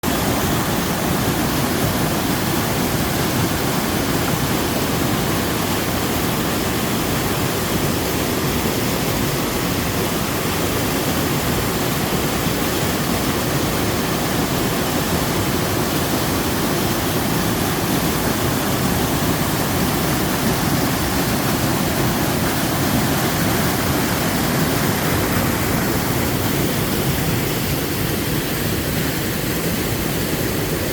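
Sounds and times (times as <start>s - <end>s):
waterfall rushing: 0.0s - 30.9s.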